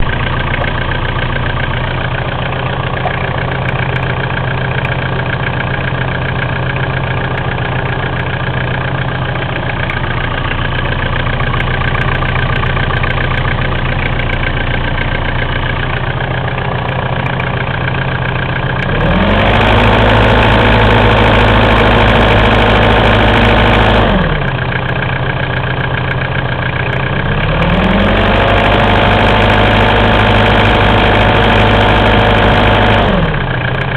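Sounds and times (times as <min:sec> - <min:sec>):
diesel engine idling with knock: 0:00.0 - 0:33.9
engine revving: 0:18.8 - 0:24.5, 0:27.3 - 0:33.6.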